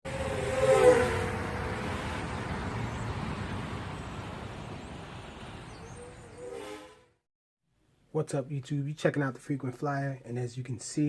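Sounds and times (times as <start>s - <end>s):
vehicle passing by: 0.1s - 7.1s.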